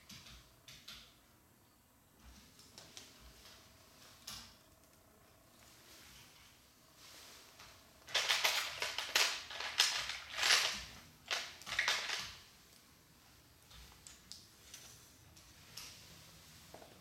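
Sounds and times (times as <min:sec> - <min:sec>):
plastic parts clattering: 0:08.0 - 0:12.4.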